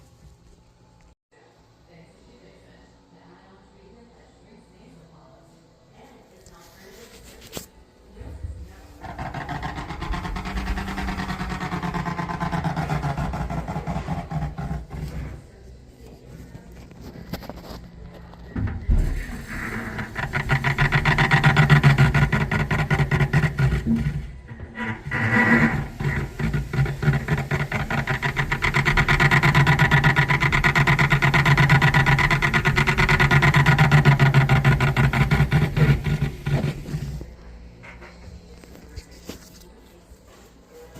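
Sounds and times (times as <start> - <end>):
clothes dryer rattling: 8.7 - 15.4, 18.5 - 37.3.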